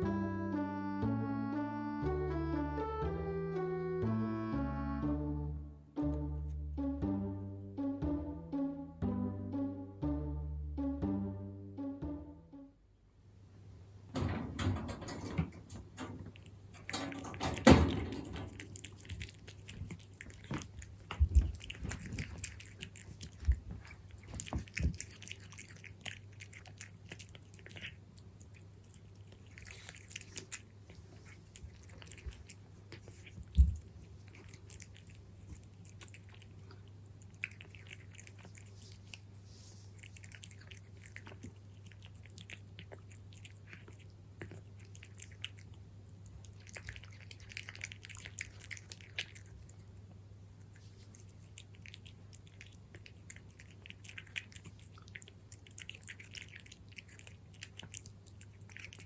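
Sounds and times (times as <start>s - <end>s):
cat chewing food: 15.5s - 59.0s.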